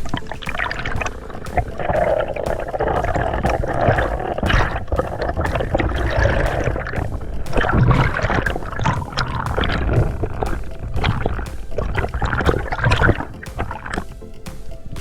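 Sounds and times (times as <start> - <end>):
water rushing and gurgling: 0.0 - 15.0.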